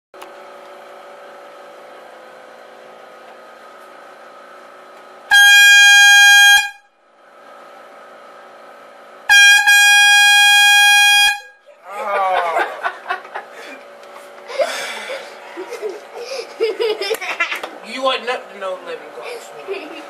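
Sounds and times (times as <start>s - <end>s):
air horn blasts: 5.3s - 7.0s, 9.3s - 11.7s.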